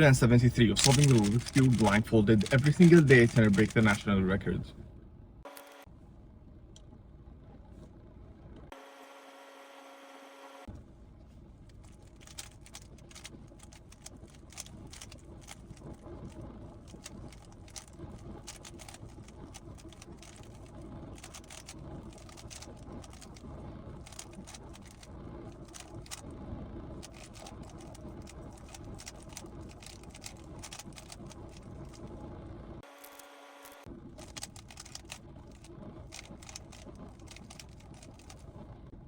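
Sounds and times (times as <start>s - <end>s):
steady low rumble: 0.0s - 8.7s, 10.7s - 32.8s, 33.8s - 39.0s
plastic cube clicking: 0.8s - 4.0s, 12.0s - 15.9s, 16.9s - 26.2s, 27.0s - 32.1s, 34.2s - 35.2s, 36.1s - 38.4s.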